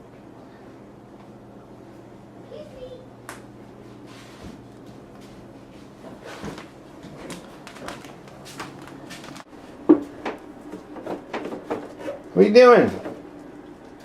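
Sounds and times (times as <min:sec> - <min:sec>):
low steady hum: 0:00.0 - 0:14.0
objects knocking and clattering: 0:09.9 - 0:12.1.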